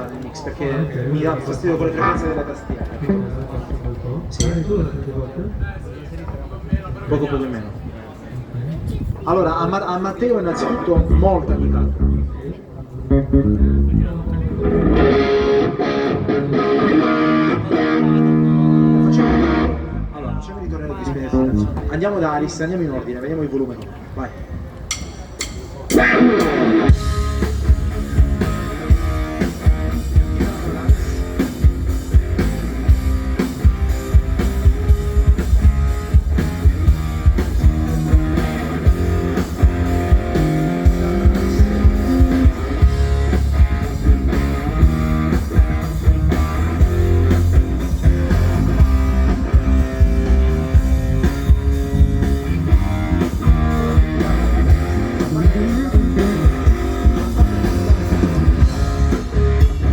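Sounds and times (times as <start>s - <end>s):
live pop-rock band playing: 10.5s - 20.2s, 24.9s - 59.9s
steady drum beat: 24.9s - 59.9s.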